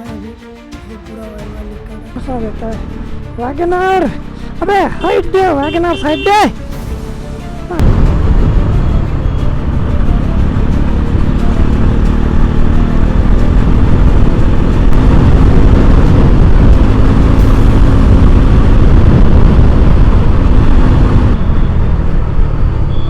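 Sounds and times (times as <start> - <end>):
motorcycle engine running: 7.7 - 23.0
wind rush on microphone: 7.8 - 23.0.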